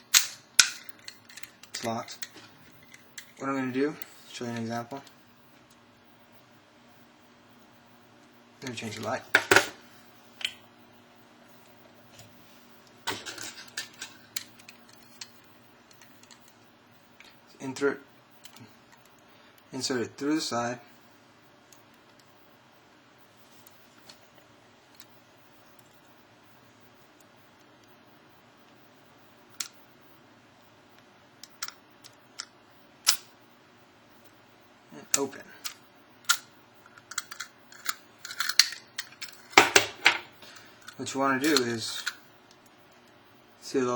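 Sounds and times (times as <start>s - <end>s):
metallic clicks in padlock: 0.1s - 1.5s.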